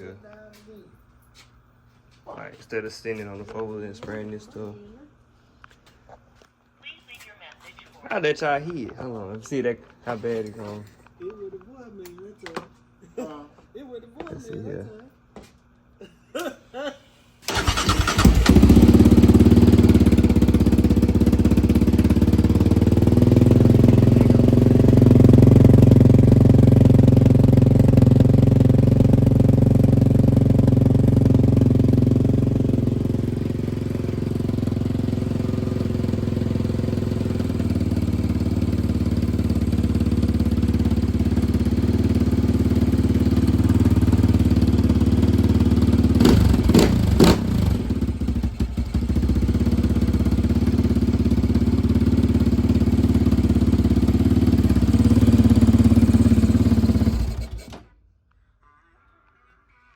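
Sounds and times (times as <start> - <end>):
atv engine idling: 17.5 - 57.8.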